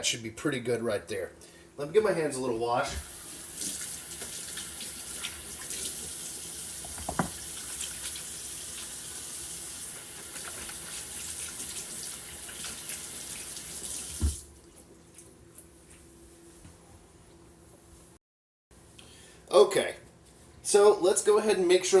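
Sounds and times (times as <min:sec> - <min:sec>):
tap water running: 0:02.9 - 0:14.8
hands washing under water: 0:03.0 - 0:15.4
knocks: 0:06.9 - 0:07.4.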